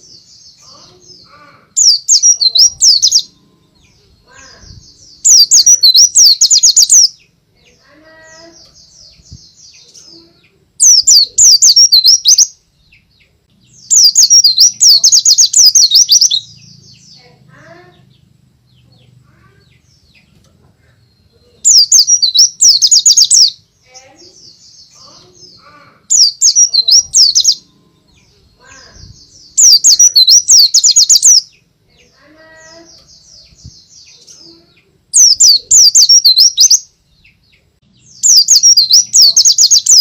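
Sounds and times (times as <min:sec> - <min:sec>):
bird rapid high twittering: 0:01.8 - 0:03.3, 0:13.9 - 0:16.5, 0:26.1 - 0:27.6, 0:28.7 - 0:31.5, 0:35.2 - 0:36.8, 0:38.2 - 0:40.0
faint bird chirps: 0:18.8 - 0:40.0.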